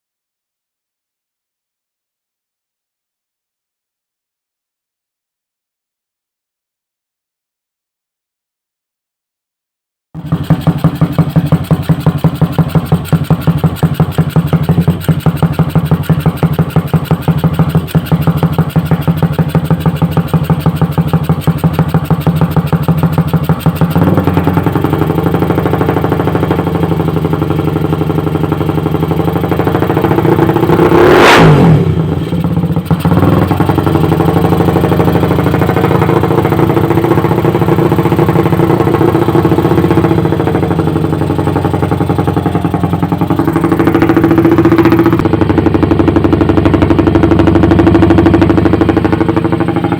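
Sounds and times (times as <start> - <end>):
motorcycle engine idling: 10.2 - 49.9
motorcycle engine revving: 10.2 - 49.9.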